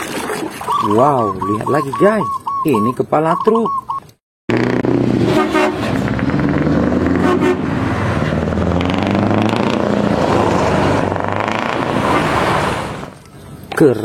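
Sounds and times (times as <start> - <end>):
short horn toots: 5.3 - 5.9, 7.2 - 7.7.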